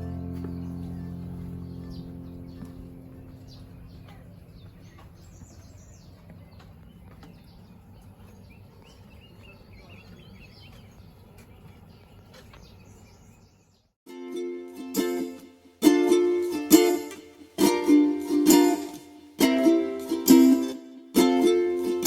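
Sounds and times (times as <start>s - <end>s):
background piano music: 0.0s - 5.3s, 14.1s - 22.0s
small birds chirping: 0.0s - 14.0s.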